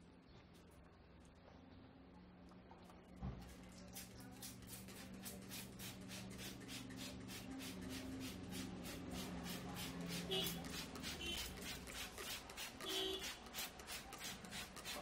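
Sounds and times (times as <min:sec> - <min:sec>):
hands rubbing hair and scalp: 0:04.4 - 0:15.0.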